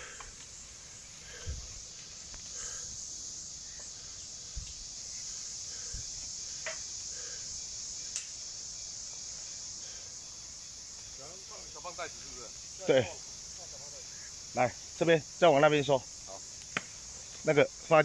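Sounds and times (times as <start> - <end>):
high-pitched insect chorus: 0.0 - 18.0.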